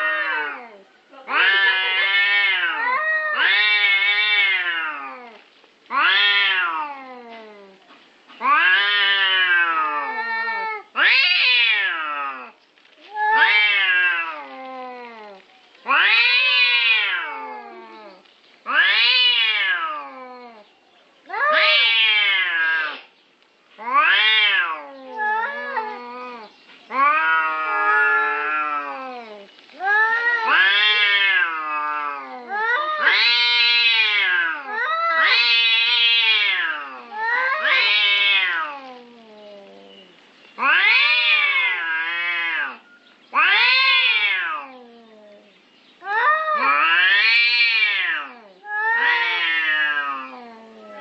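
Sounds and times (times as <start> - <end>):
cat yowling: 0.0 - 7.7, 8.4 - 12.5, 13.1 - 20.6, 21.3 - 23.1, 23.8 - 51.0.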